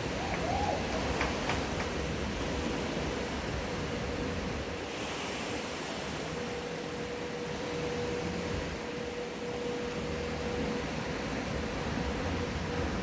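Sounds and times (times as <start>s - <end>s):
water rushing in wave pool: 0.0s - 7.4s.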